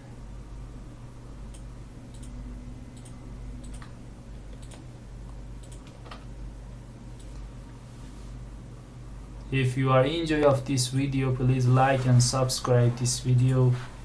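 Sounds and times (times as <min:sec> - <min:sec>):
steady low hum: 0:00.0 - 0:14.0
computer mouse and keyboard clicks: 0:01.5 - 0:02.4, 0:03.0 - 0:04.9, 0:05.6 - 0:06.3.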